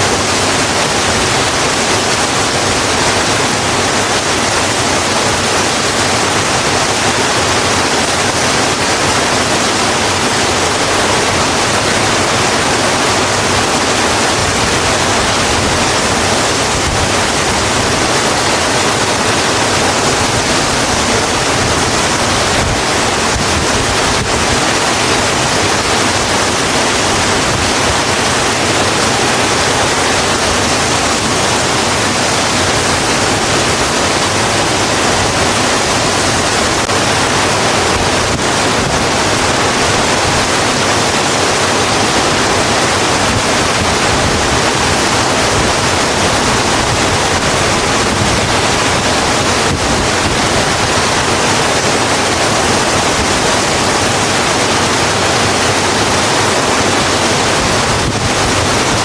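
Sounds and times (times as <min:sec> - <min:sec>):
heavy rain on a road: 0:00.0 - 0:59.0.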